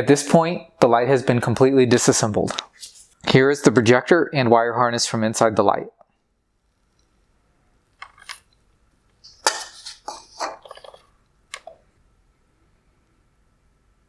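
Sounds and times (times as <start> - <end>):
hard plastic parts clinking: 8.0 - 11.8.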